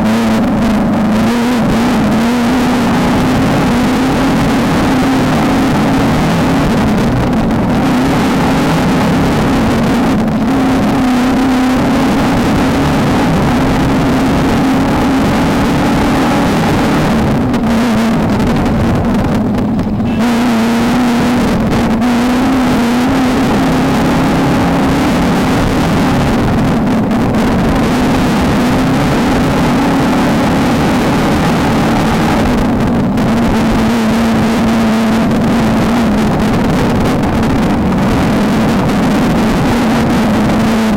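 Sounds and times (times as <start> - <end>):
dense rush of noise: 0.0 - 40.9
race car engine running hard: 0.0 - 40.9.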